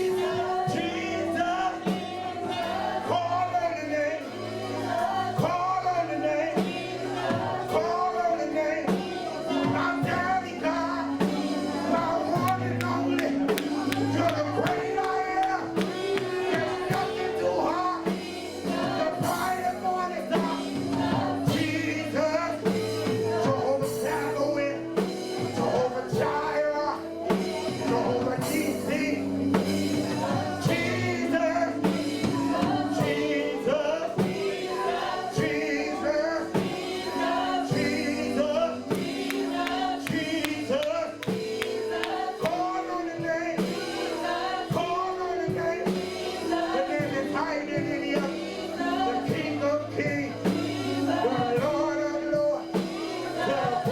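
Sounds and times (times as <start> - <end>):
sustained instrumental chords: 0.0 - 53.9
voices singing gospel: 0.0 - 53.9.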